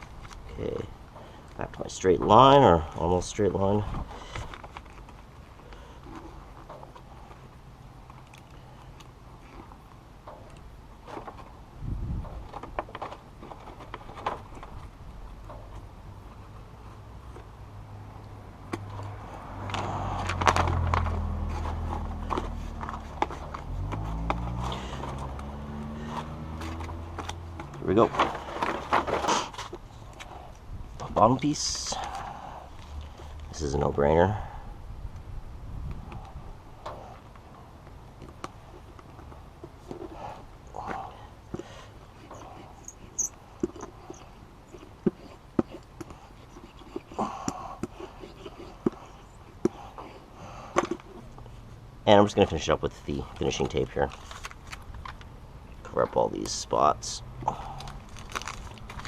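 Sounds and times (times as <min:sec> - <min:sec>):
sound deadener sheets crinkling: 0:53.2 - 0:55.3, 0:57.8 - 0:59.0.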